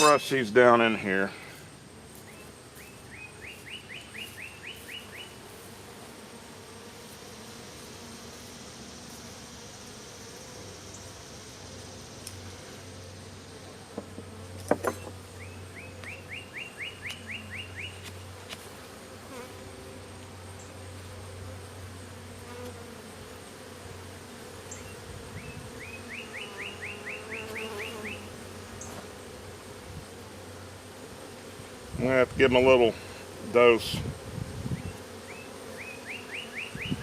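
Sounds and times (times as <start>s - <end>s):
honeybees buzzing: 0.0s - 37.0s.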